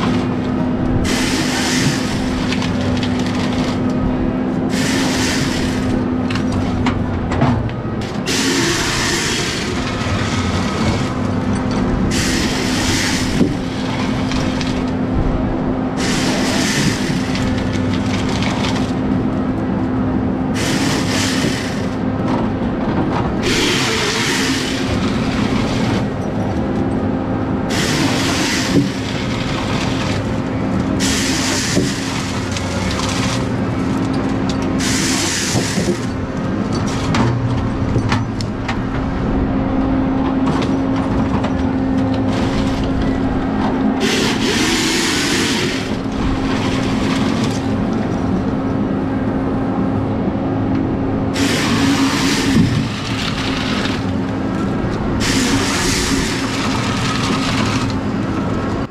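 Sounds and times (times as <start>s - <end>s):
diesel engine running: 0.0s - 58.9s
hissing bursts: 23.4s - 25.0s, 44.0s - 46.0s, 51.4s - 54.1s, 55.2s - 57.0s.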